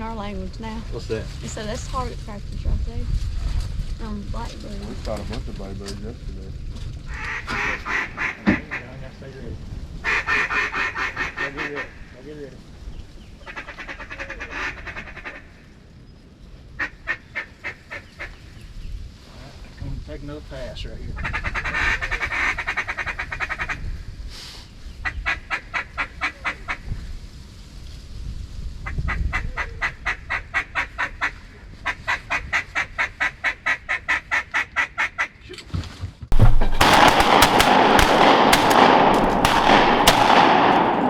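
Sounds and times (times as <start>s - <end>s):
duck call quacks: 7.2s - 9.0s, 10.1s - 11.9s, 13.5s - 15.5s
duck call rattling chatter: 7.2s - 9.0s, 10.0s - 11.9s, 13.5s - 15.5s, 21.2s - 23.8s.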